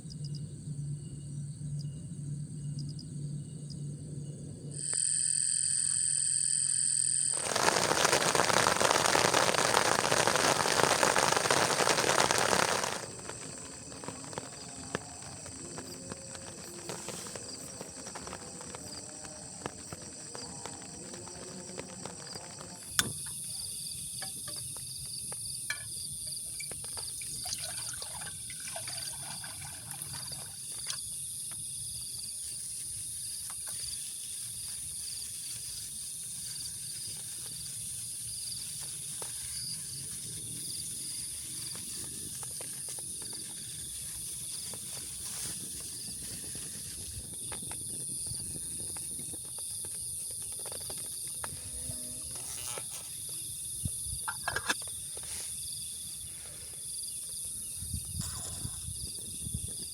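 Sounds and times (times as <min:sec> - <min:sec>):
insects chirping: 0:00.0 - 0:59.9.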